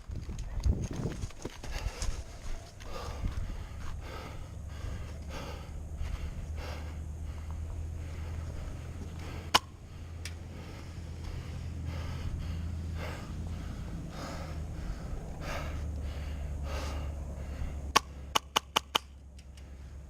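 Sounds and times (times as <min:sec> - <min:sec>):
heavy breathing: 0:01.5 - 0:18.3, 0:19.5 - 0:20.0
sharp cracks: 0:17.9 - 0:19.6.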